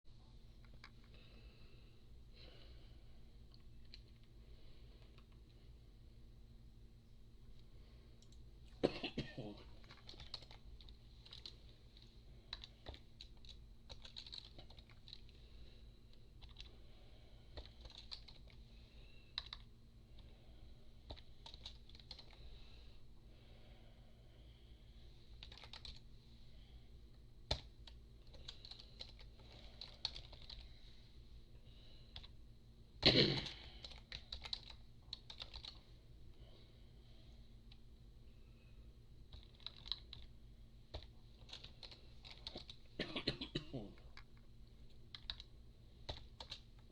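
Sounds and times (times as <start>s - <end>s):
faint electrical hum: 0.1s - 46.9s
typing on keyboard: 9.8s - 15.3s, 16.4s - 16.7s, 17.5s - 18.6s, 19.3s - 19.7s, 21.1s - 22.4s, 25.4s - 26.0s, 27.5s - 30.7s, 33.4s - 35.8s, 39.3s - 40.3s, 40.9s - 42.8s, 45.1s - 46.8s.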